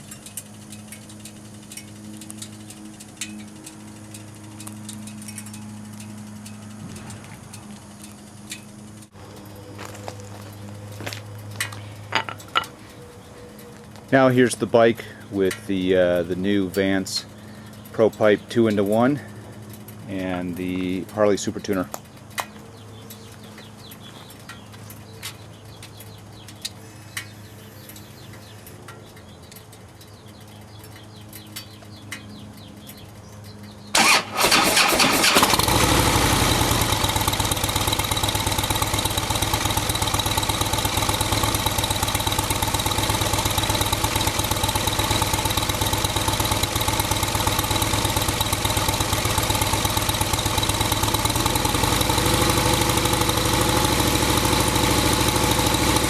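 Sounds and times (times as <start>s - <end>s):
motorcycle engine idling: 0.0s - 56.0s
motorcycle starter cranking: 15.4s - 56.0s
faint clicks: 21.0s - 33.8s.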